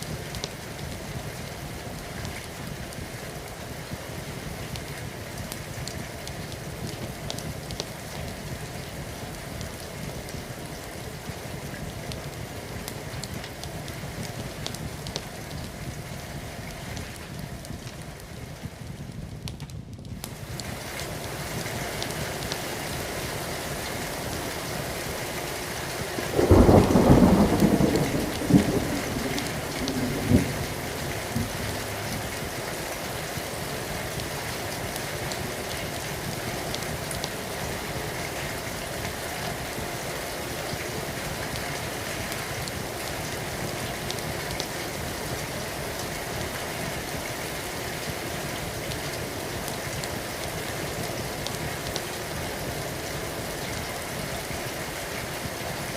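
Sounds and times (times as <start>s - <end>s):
heavy rain falling: 0.0s - 55.9s
thunder clap and rumble: 26.2s - 32.6s.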